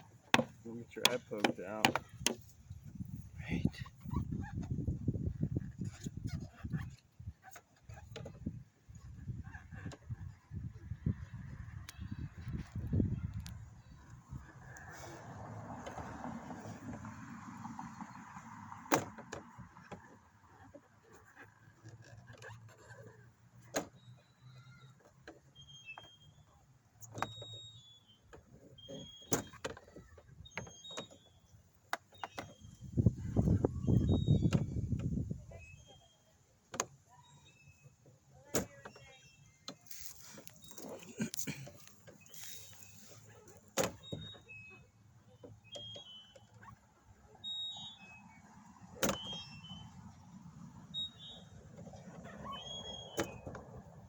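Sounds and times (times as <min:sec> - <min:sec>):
faint high squeaks: 0:19.8 - 0:54.0
plastic tools clicking and scraping: 0:39.7 - 0:43.3.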